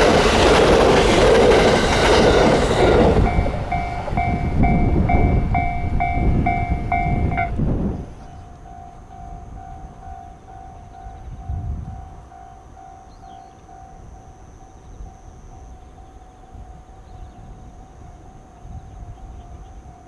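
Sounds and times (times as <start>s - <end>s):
train rumbling: 0.0s - 14.4s
level crossing alarm dinging: 0.4s - 8.0s.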